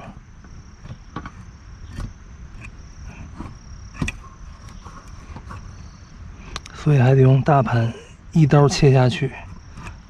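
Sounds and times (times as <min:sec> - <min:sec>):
sharp clicks and light knocks: 0:00.4 - 0:02.8.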